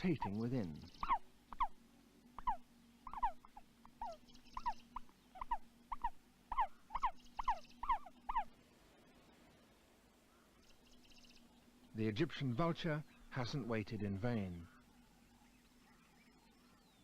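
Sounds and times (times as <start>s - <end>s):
ostrich chicks peeping: 0.0s - 1.8s, 2.4s - 8.5s.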